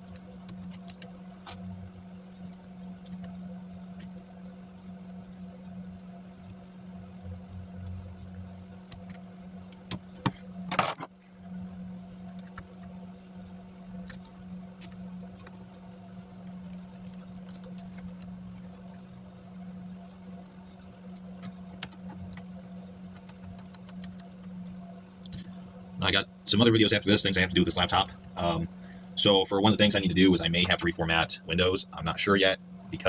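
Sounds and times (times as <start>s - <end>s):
small clicks and handling noises: 0.0s - 4.4s, 6.4s - 11.2s, 12.0s - 13.0s, 14.0s - 19.5s, 20.3s - 25.6s
steady low hum: 0.0s - 33.0s.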